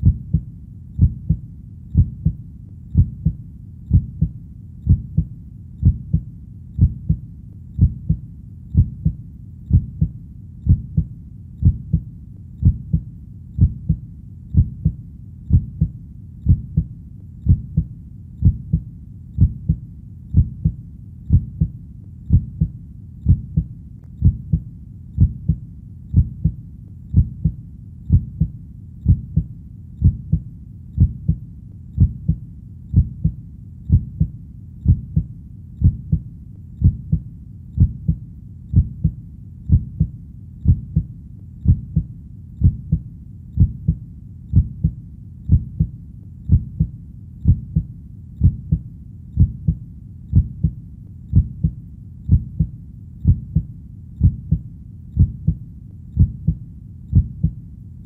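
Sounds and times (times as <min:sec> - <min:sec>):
heartbeat thumps: 0:00.0 - 0:57.6
faint low hum: 0:00.0 - 0:58.0.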